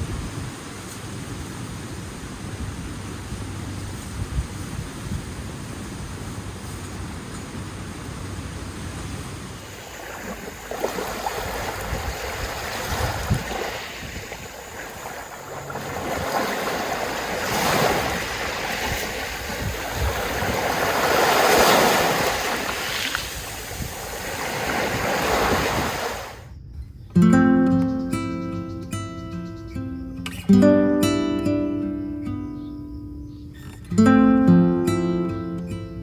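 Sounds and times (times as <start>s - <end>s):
sea waves washing on beach: 0.0s - 26.5s
wind on microphone: 0.0s - 27.2s
acoustic guitar music: 27.1s - 36.0s.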